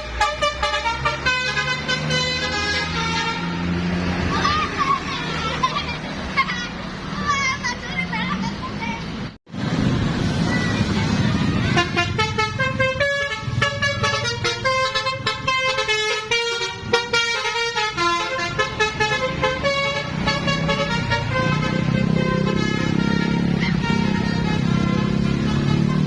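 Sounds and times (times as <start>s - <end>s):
bus horn playing a tune: 0.0s - 3.9s, 11.6s - 26.0s
bus noise: 0.0s - 26.0s.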